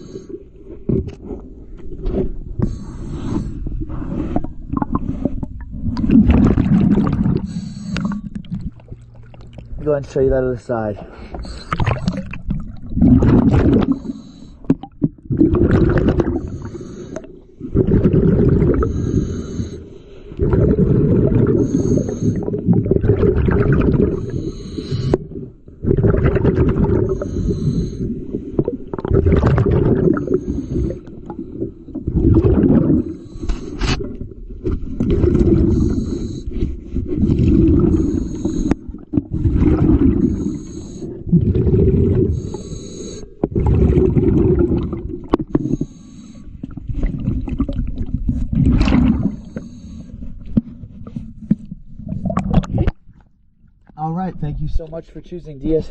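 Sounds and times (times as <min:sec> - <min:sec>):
bubbles rumbling underwater: 0:03.7 - 0:10.0, 0:11.4 - 0:19.8, 0:20.4 - 0:33.4, 0:34.0 - 0:42.8, 0:43.4 - 0:45.9, 0:46.6 - 0:49.6, 0:52.0 - 0:53.1.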